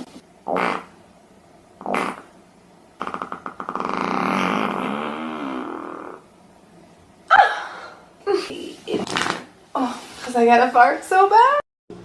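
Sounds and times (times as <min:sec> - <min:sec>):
long fart: 0:00.4 - 0:01.0, 0:01.8 - 0:02.4, 0:03.0 - 0:06.3.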